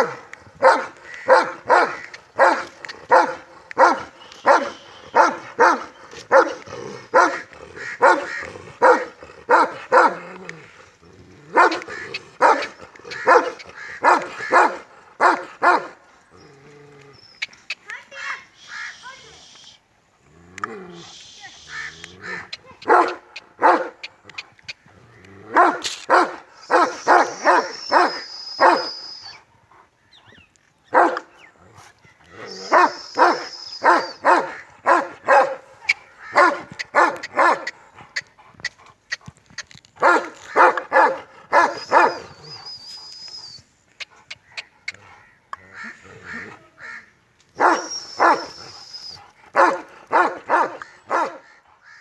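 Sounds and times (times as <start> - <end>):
dogs barking: 0.0 - 10.3, 11.5 - 16.0, 22.2 - 24.1, 25.5 - 28.9, 30.9 - 31.3, 32.5 - 38.8, 40.0 - 42.6, 47.6 - 48.7, 49.5 - 51.6.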